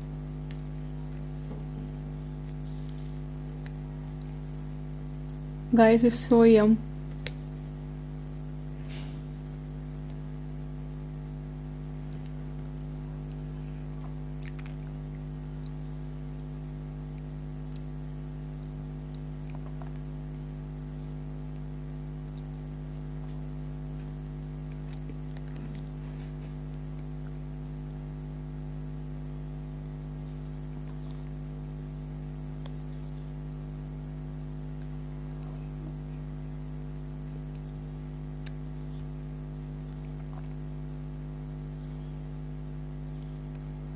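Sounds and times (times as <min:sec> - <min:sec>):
electrical hum: 0:00.0 - 0:43.9
mouth sounds of eating: 0:11.0 - 0:28.1, 0:28.8 - 0:43.9.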